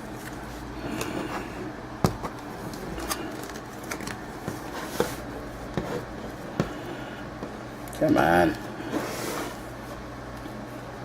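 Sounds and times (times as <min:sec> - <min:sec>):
trading cards and packaging handled: 0:00.0 - 0:05.3
steady low hum: 0:00.0 - 0:11.0.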